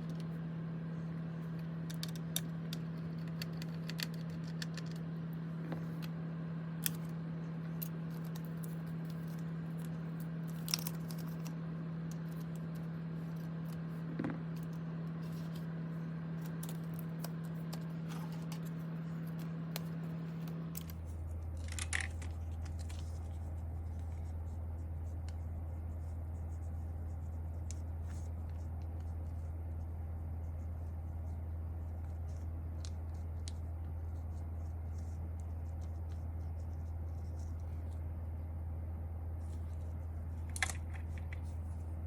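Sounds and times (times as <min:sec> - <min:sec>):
steady low hum: 0:00.0 - 0:42.0
keyboard parts clicking and scraping: 0:16.4 - 0:23.3, 0:40.4 - 0:41.6.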